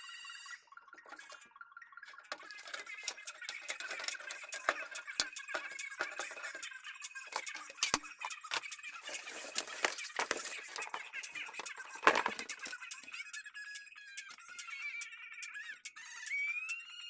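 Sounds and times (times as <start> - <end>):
clicks and rattles of pc parts: 2.1 - 13.2.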